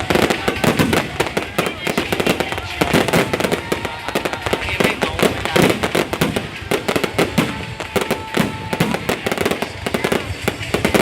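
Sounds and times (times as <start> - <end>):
fireworks crackling and banging: 0.0 - 11.0.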